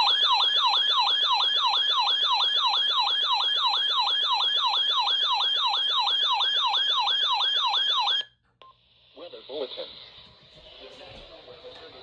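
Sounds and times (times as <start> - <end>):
warbling electronic siren alert: 0.0 - 8.3.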